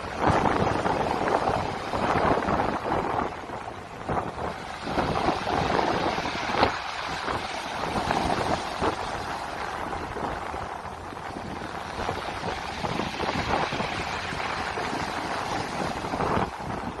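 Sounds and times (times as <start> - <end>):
sea waves on shore: 0.0 - 17.0
wind rumble on microphone: 0.0 - 17.0.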